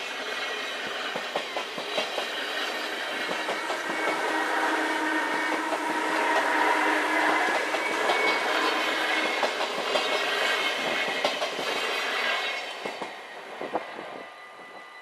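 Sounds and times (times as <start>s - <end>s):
train wheels clattering over rail joints: 0.3s - 4.2s, 7.5s - 13.2s.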